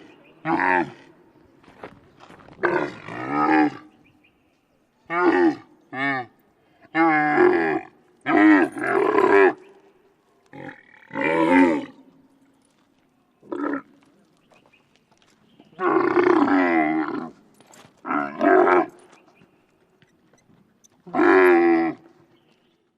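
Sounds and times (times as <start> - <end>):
camel calling: 15.7 - 19.4, 20.0 - 22.5.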